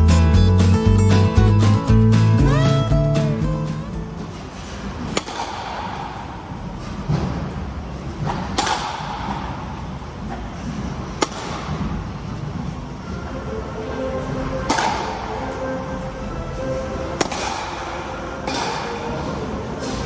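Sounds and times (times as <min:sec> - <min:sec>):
train rumbling: 0:00.0 - 0:05.0.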